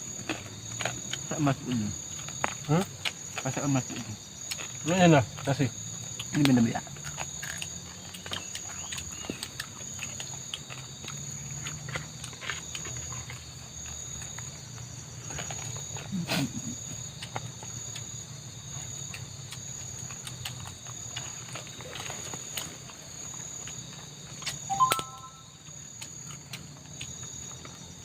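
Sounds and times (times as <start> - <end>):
insects chorus pulsing: 0.0 - 28.0.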